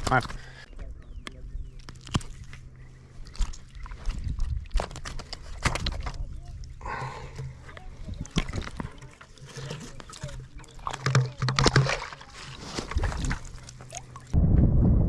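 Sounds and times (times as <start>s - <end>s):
wet clicks and slaps: 1.2s - 2.6s
fish grunting: 6.7s - 14.3s.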